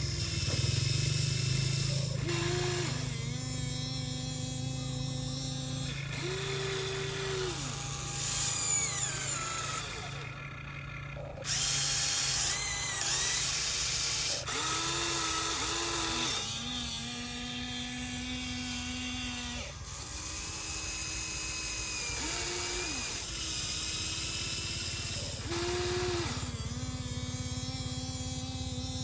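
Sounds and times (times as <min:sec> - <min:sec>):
electric motors whining: 0:00.0 - 0:29.0
loud hissing whir: 0:00.0 - 0:29.0.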